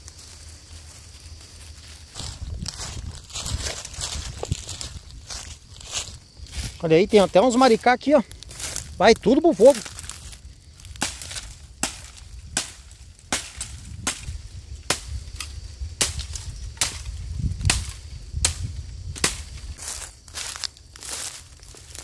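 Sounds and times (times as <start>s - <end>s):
footsteps snapping dry twigs: 0.0s - 22.0s
wind rumble on microphone: 2.1s - 7.4s, 8.2s - 20.3s.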